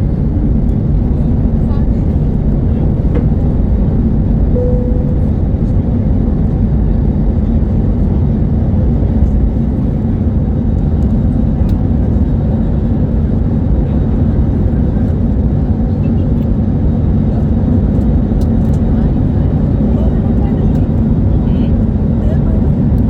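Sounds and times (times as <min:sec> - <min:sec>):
airliner cabin engine rumble: 0:00.0 - 0:23.0
faint brief tone: 0:04.5 - 0:06.0.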